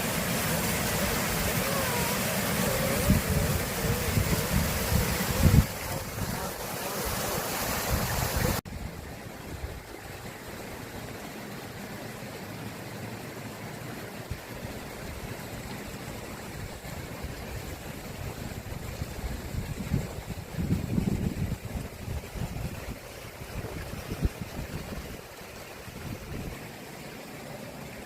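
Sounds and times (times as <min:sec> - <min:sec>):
waterfall rushing: 0:00.0 - 0:08.6.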